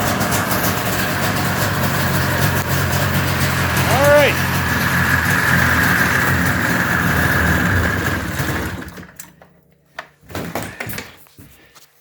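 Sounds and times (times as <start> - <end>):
snowmobile engine running: 0.0 - 9.1.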